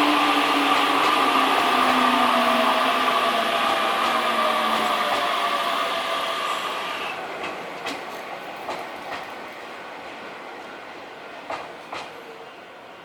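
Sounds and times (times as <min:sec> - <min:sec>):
electric train running past: 0:00.0 - 0:13.0
wheels clacking over rail joints: 0:07.3 - 0:09.4.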